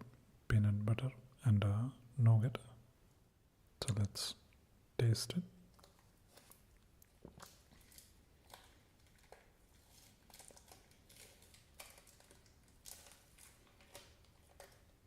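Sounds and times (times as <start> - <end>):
faint chewing: 5.7 - 15.0.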